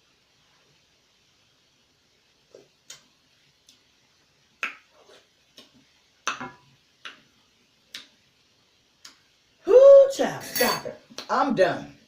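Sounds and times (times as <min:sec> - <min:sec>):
lip smacks: 0:05.5 - 0:06.4, 0:07.9 - 0:08.2, 0:09.0 - 0:09.2.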